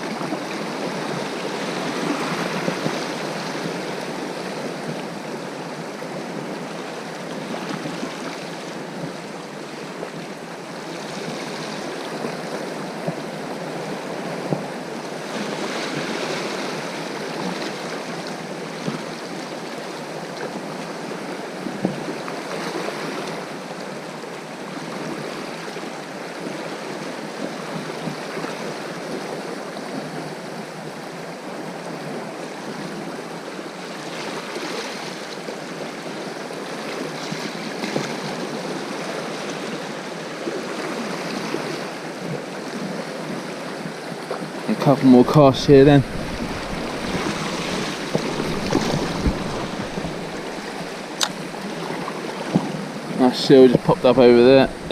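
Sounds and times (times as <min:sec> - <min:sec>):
waves washing over rocky shore: 0:00.0 - 0:54.9
faint knocks: 0:46.0 - 0:51.0.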